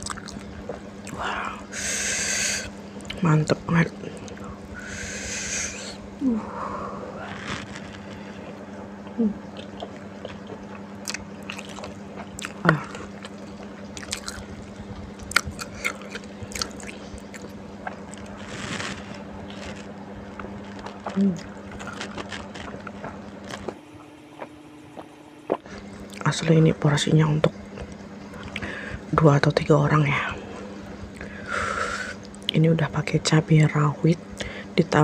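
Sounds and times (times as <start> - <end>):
chewing and crunching food: 0.0 - 5.4, 7.2 - 26.8, 27.4 - 29.6
steady low hum: 0.0 - 35.0.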